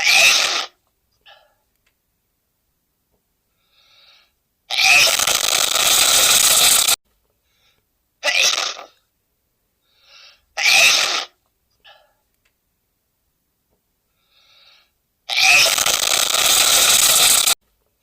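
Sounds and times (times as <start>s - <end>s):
faint breaths: 3.4s - 4.4s, 7.3s - 7.9s, 9.8s - 10.6s, 14.0s - 15.0s.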